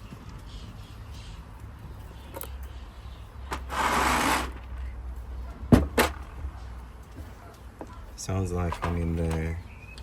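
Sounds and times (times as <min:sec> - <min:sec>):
faint bird chirps: 0:09.5 - 0:10.0.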